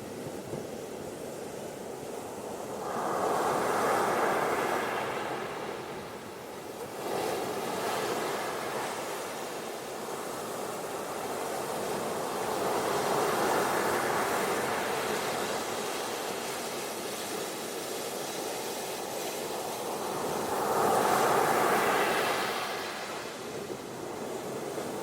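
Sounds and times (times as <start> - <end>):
ocean surf washing onto beach: 6.9 - 25.0.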